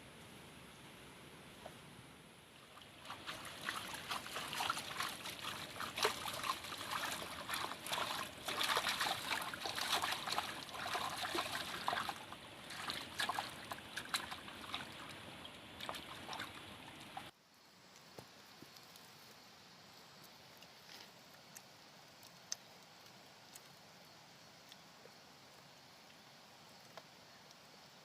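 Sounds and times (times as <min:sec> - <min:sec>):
water trickling and splashing: 0:02.5 - 0:17.3.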